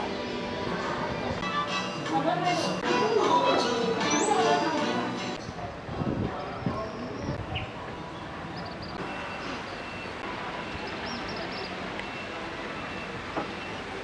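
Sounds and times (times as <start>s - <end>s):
vehicle engine rumbling: 5.3s - 14.0s.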